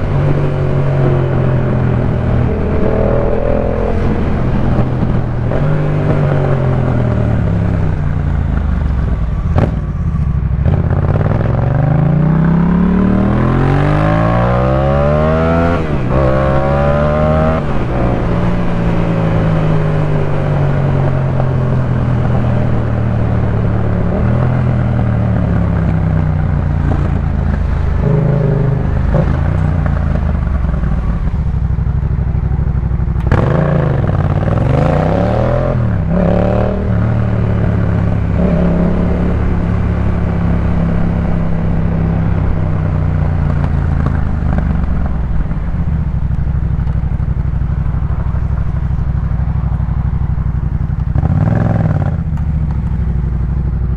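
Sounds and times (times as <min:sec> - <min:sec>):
motorcycle engine accelerating: 0:00.0 - 0:53.9.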